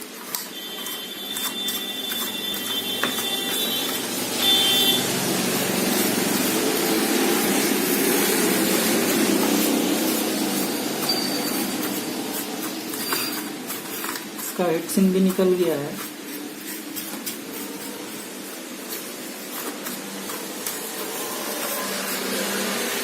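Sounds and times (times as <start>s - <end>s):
steady rushing machine noise: 1.9s - 14.4s, 16.1s - 23.0s
brush strokes and clicks: 5.5s - 22.8s.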